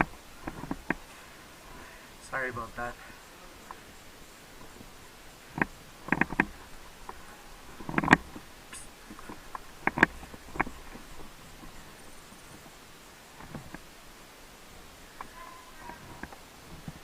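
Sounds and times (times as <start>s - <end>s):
sharp clicks and knocks: 5.5s - 7.2s, 7.8s - 11.8s.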